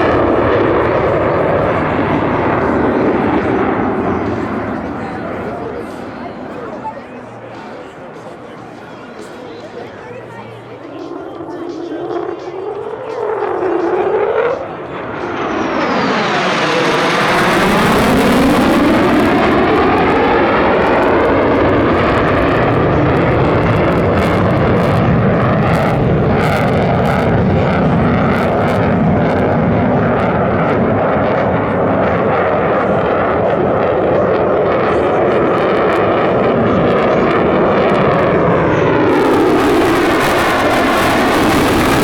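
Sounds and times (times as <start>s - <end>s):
jet engine rumble: 0.0s - 8.3s, 11.0s - 42.0s
jet passing with whoosh: 13.4s - 30.6s, 36.0s - 42.0s.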